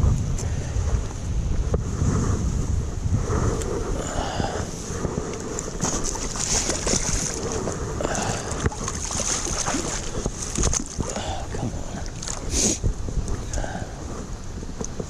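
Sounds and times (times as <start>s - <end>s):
wind rumbling on microphone: 0.0s - 15.0s
water splashing: 5.6s - 12.9s.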